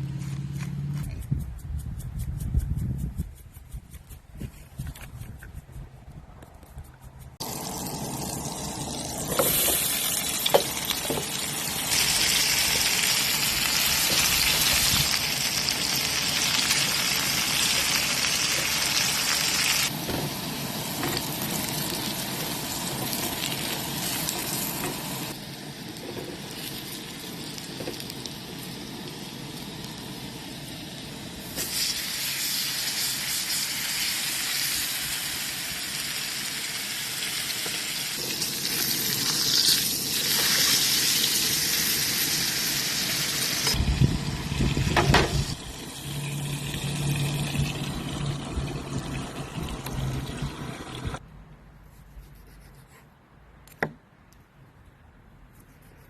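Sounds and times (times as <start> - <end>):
steak sizzling in a pan: 7.4 - 25.3, 31.5 - 43.8.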